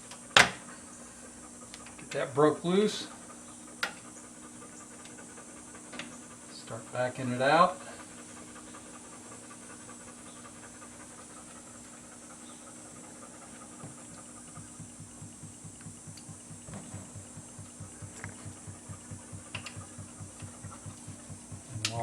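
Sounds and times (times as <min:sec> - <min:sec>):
light clicks: 0:14.6 - 0:22.0.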